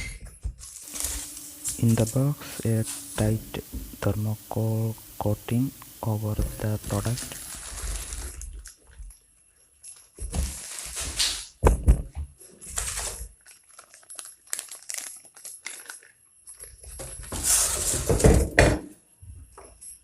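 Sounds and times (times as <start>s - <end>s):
foam and cardboard rustling: 0.2s - 3.9s, 6.1s - 8.7s, 10.2s - 11.6s, 12.6s - 13.5s, 17.0s - 18.5s.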